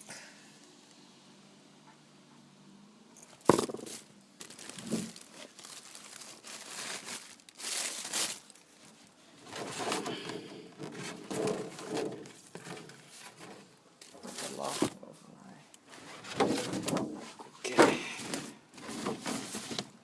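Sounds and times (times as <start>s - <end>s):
packaging crinkling and tearing: 3.9s - 10.2s.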